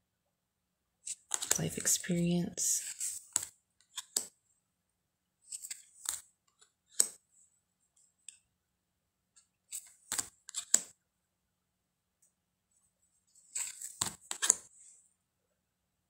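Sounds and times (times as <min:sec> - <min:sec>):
cards snapping and sliding: 0:01.1 - 0:01.6, 0:02.8 - 0:04.3, 0:05.5 - 0:06.3, 0:06.9 - 0:07.2, 0:09.7 - 0:10.9, 0:13.5 - 0:14.7.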